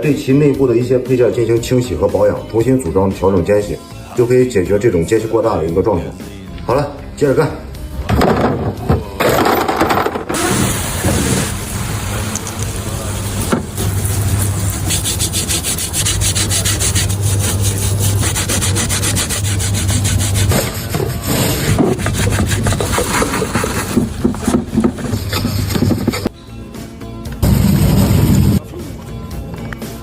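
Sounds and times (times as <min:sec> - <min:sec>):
scrubbing metal parts: 0:13.5 - 0:26.3.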